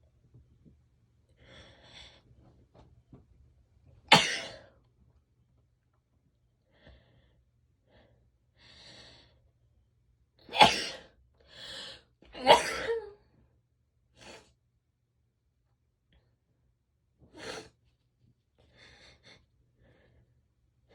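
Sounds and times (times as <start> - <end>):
woman sneezing: 12.4 - 13.2.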